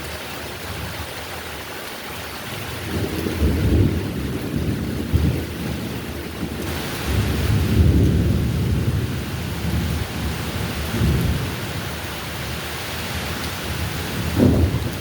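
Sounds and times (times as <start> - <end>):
heavy rain falling: 0.0 - 15.0
low thunder rumbles: 2.8 - 15.0.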